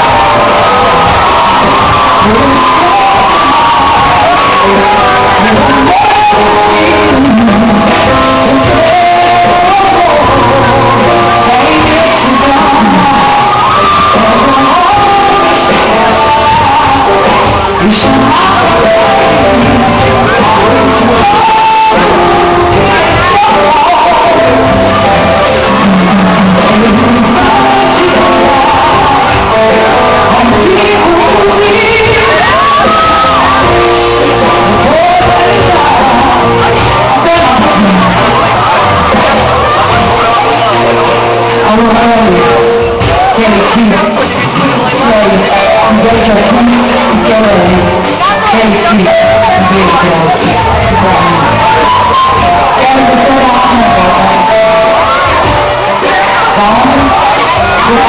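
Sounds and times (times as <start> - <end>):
band with guitar: 0.0 - 58.0
woman singing pop ballad: 2.2 - 25.3, 26.6 - 38.0.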